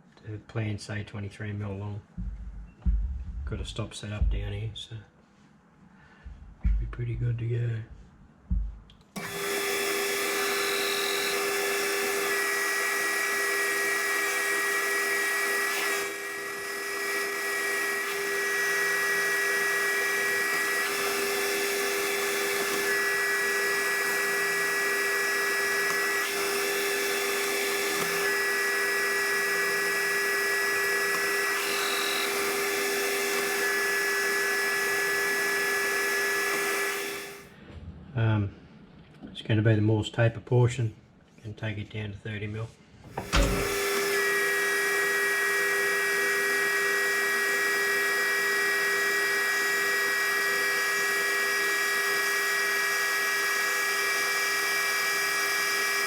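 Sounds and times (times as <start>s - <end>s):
high cutting whine: 8.5s - 37.5s, 43.1s - 56.0s
metal lathe running: 9.2s - 37.5s, 43.1s - 56.0s.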